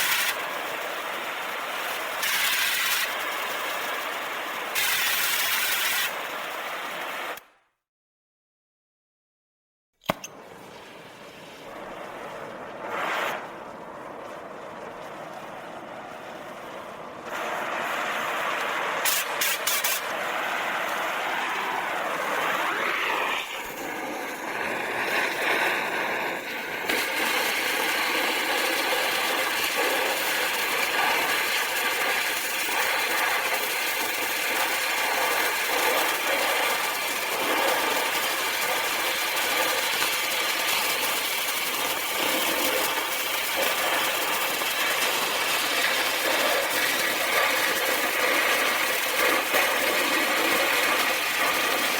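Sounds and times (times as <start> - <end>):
gas flame hissing: 0.0 - 7.4, 10.1 - 51.9
torch igniter clicks: 10.0 - 10.6.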